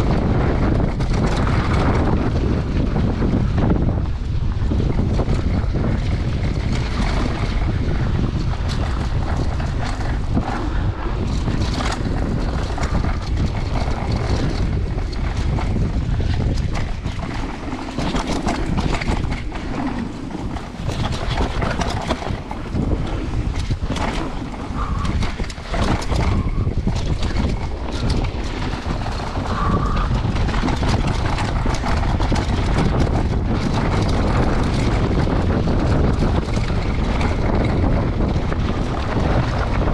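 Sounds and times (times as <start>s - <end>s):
bike rattling clicks and knocks: 0.0s - 39.9s
tyres rumbling on dirt trail: 0.0s - 39.9s
wind buffeting microphone: 0.0s - 39.9s.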